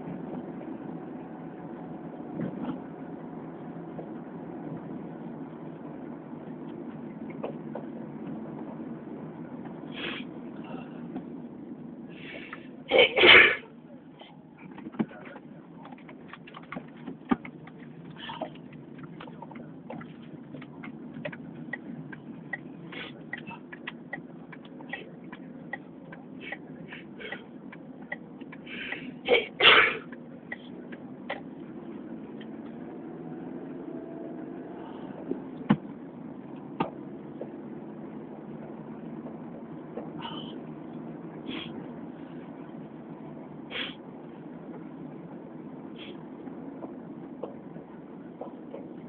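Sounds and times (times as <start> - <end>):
steady low hum: 0.0 - 49.0
person sneezing: 12.9 - 13.7, 29.3 - 30.0.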